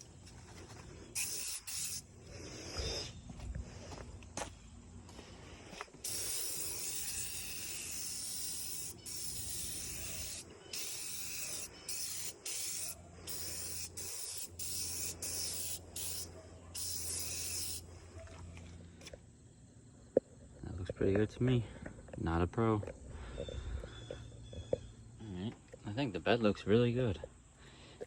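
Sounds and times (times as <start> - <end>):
steady low hum: 0.0 - 26.2
spraying hiss bursts: 1.2 - 2.1, 6.0 - 17.9.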